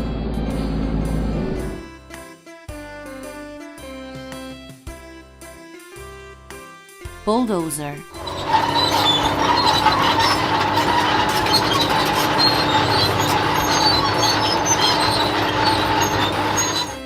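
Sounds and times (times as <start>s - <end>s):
bulldozer mechanical din: 8.1s - 17.0s
held mechanical whine: 8.1s - 17.0s.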